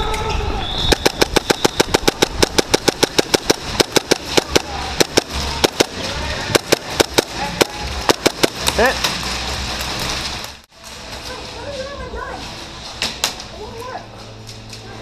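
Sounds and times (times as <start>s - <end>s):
airsoft gun firing shots: 0.9s - 8.9s.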